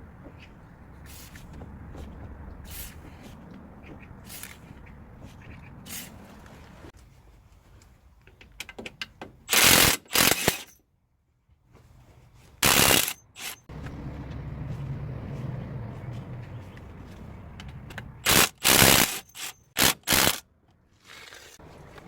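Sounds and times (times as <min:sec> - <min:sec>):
engine idling: 0:13.7 - 0:18.0.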